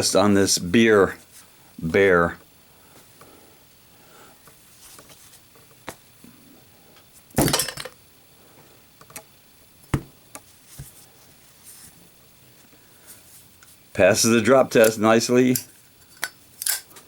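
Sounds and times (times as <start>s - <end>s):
metallic clatter: 7.4s - 8.0s.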